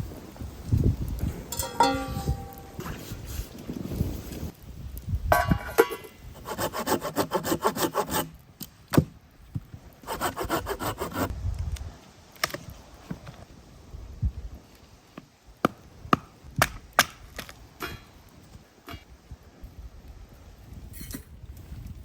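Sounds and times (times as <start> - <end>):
hand saw cutting wood: 6.4 - 8.4, 10.0 - 11.3.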